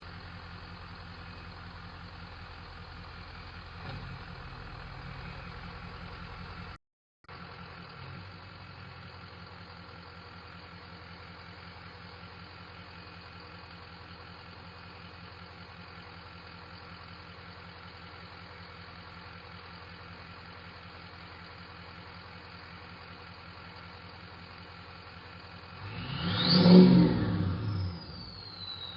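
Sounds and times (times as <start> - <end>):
diesel engine idling: 0.0 - 28.9.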